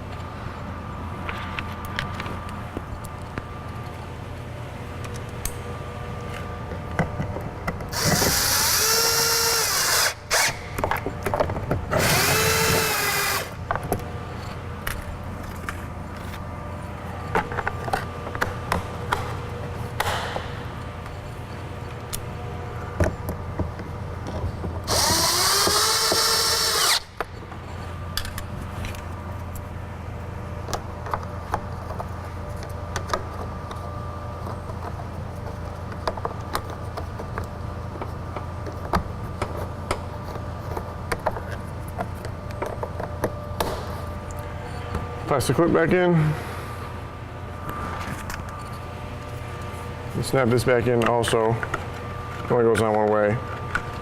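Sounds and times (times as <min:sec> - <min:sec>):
steady low hum: 0:00.0 - 0:54.0
power drill whine: 0:07.9 - 0:10.6, 0:11.9 - 0:13.6, 0:24.9 - 0:27.1.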